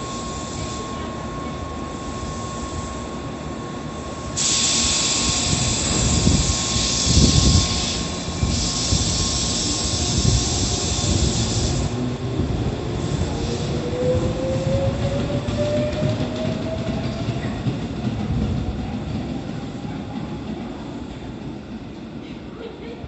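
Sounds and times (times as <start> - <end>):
loud hiss of air: 0.0 - 1.1, 4.0 - 14.0.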